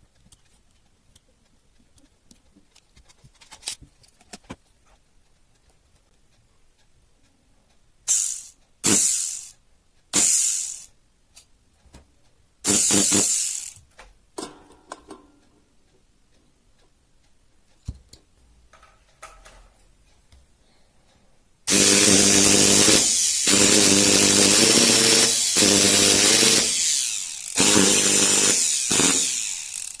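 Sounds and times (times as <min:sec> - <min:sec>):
electric motor running: 0:21.7 - 0:30.0.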